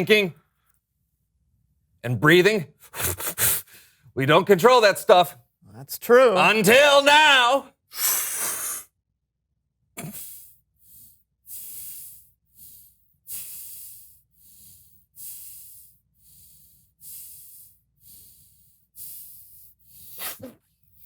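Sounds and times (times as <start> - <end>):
person breathing hard through nose: 2.8 - 4.1, 7.9 - 8.9, 10.0 - 20.3.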